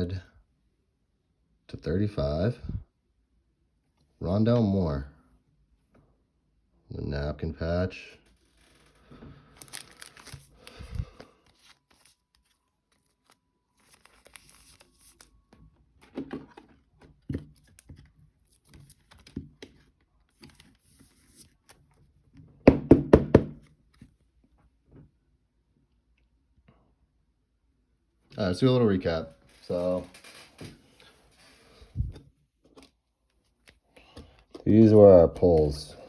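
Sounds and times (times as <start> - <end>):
cards and wrappers rustling: 8.2 - 22.2, 29.1 - 36.0.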